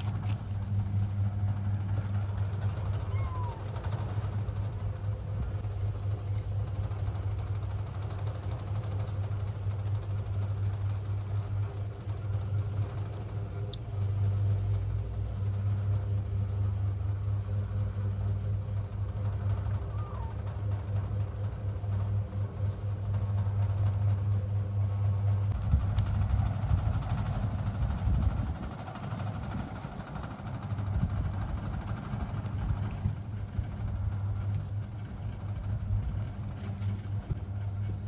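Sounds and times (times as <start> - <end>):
steady low hum: 0.0 - 38.0
faint kitten mew: 3.0 - 3.8, 19.8 - 20.5.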